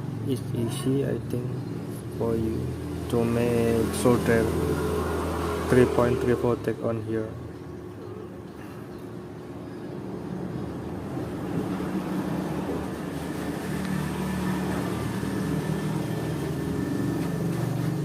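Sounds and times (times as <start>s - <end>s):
vehicle engine humming: 9.2s - 18.0s.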